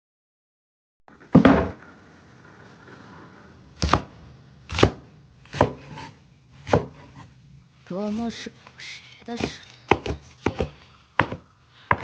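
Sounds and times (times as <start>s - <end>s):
knife chopping on cutting board: 3.8s - 4.1s, 4.7s - 7.2s, 9.4s - 12.0s.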